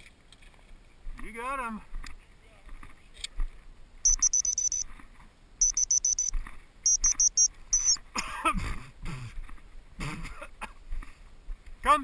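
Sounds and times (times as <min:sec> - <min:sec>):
rapid electronic beeps: 0:04.1 - 0:04.8, 0:05.6 - 0:06.3, 0:06.9 - 0:08.0
warbling electronic chirp: 0:04.1 - 0:04.8, 0:05.6 - 0:06.3, 0:06.9 - 0:08.0.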